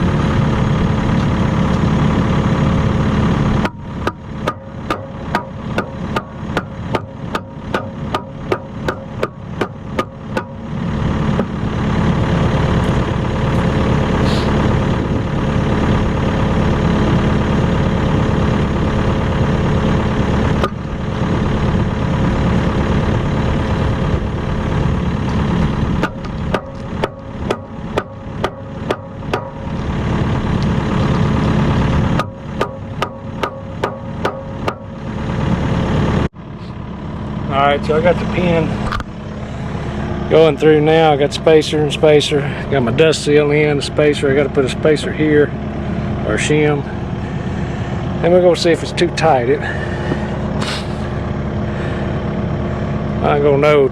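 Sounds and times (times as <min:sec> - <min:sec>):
excavator diesel engine running: 0:00.0 - 0:53.9
sharp knocking: 0:03.6 - 0:10.7, 0:26.0 - 0:29.7, 0:32.2 - 0:35.0.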